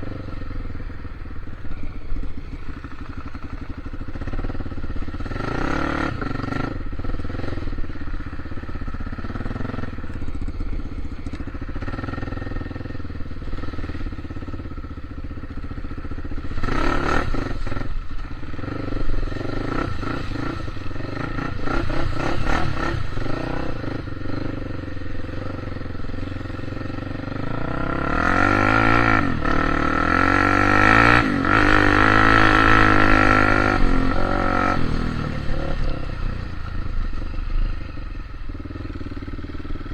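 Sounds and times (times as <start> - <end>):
vehicle engine revving: 18.6 - 39.9.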